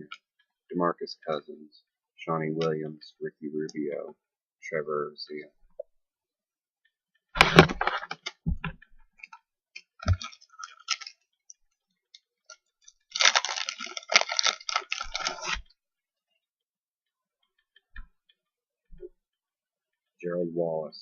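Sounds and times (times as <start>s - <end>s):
trading cards clicking and crinkling: 12.5s - 15.7s.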